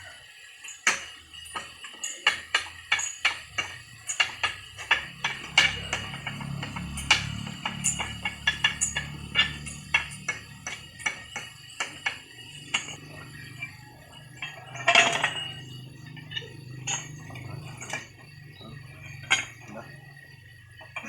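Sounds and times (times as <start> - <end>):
metal clatter: 0.6 - 21.0
metallic clinks and knocks: 0.6 - 21.0.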